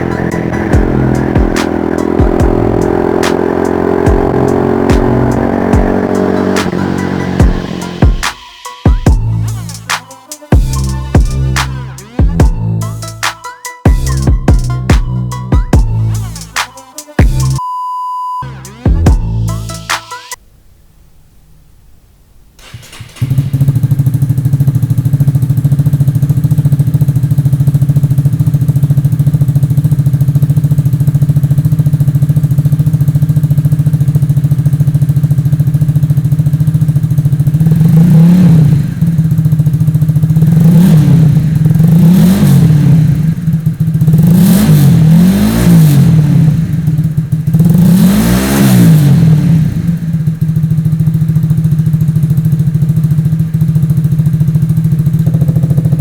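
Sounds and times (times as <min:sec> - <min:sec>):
motorcycle engine idling and revving: 0:00.0 - 0:17.6, 0:18.4 - 0:20.1, 0:22.6 - 0:56.0.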